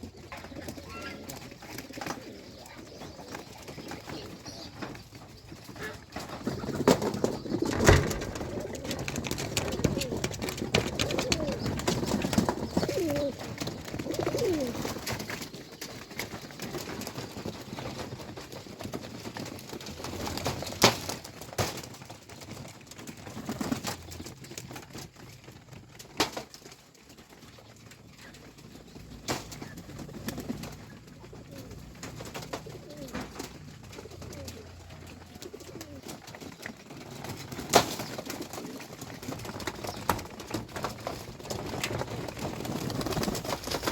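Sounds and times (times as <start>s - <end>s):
pigeons cooing: 0.0s - 18.1s, 28.2s - 43.9s.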